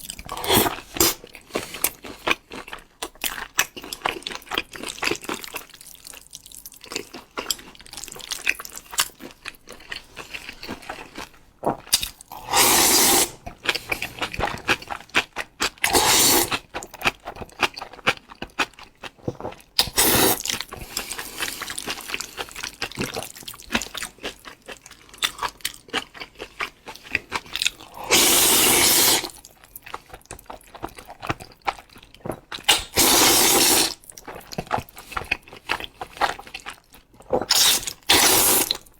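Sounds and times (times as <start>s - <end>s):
loud slurps: 0.0s - 1.2s, 12.4s - 14.8s, 15.9s - 16.5s, 28.0s - 29.3s, 32.7s - 34.0s, 37.6s - 38.8s.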